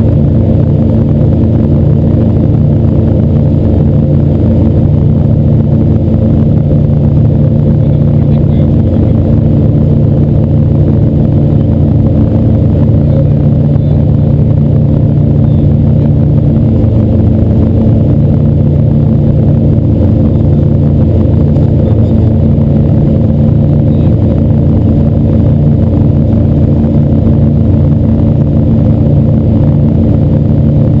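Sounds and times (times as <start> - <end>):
motorboat engine droning: 0.0 - 31.0.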